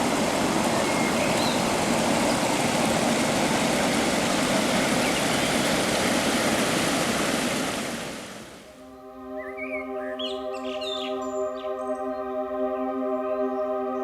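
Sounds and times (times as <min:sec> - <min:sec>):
rushing water: 0:00.0 - 0:08.7
bird chirp: 0:00.6 - 0:01.8, 0:04.3 - 0:05.8, 0:09.4 - 0:13.7
soft held musical chord: 0:08.7 - 0:14.0.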